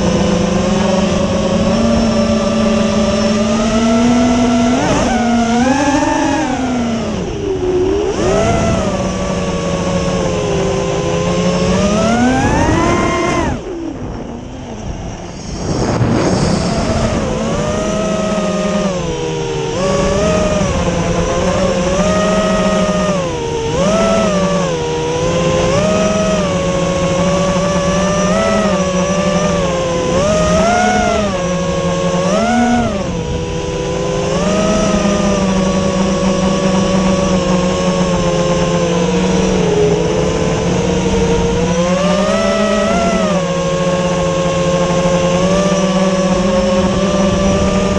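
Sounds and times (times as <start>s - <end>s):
drone motors whining: 0.0s - 47.9s.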